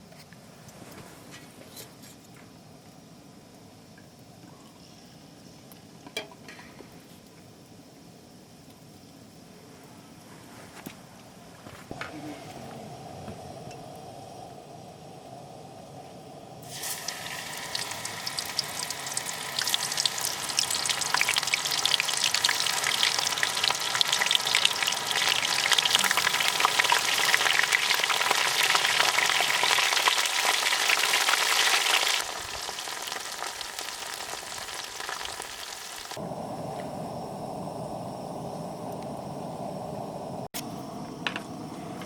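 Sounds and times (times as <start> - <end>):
food frying in hot fat: 16.1 - 36.2.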